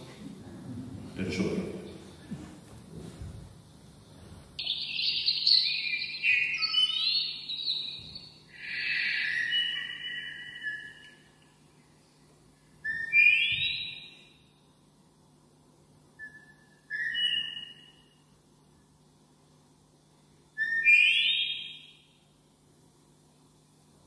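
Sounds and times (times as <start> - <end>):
bird song whistled notes: 4.6 - 11.6, 12.8 - 14.6, 16.2 - 18.3, 20.6 - 22.2.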